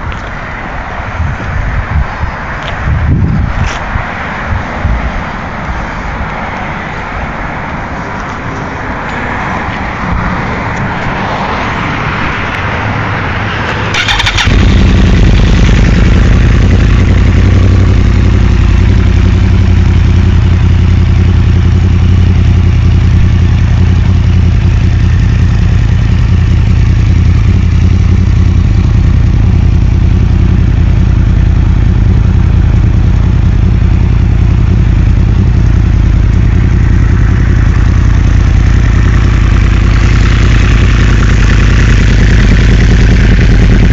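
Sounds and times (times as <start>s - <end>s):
motorcycle engine starting and idling: 13.6s - 43.9s.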